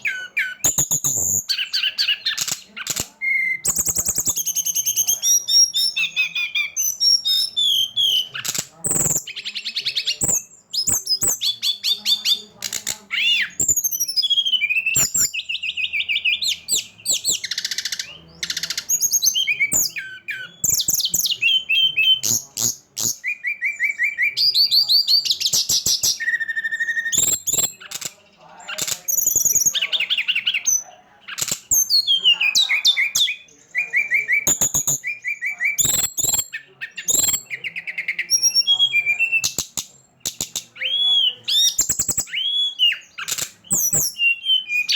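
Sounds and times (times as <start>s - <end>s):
songbird singing: 0.0s - 44.9s.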